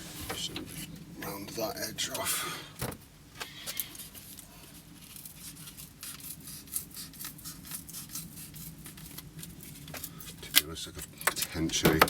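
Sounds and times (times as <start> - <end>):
paper board rustling and clicks: 8.9 - 12.0.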